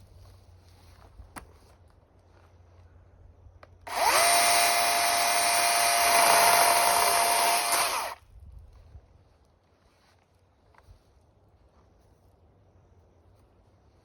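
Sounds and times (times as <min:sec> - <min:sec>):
chainsaw running: 0:03.8 - 0:08.2.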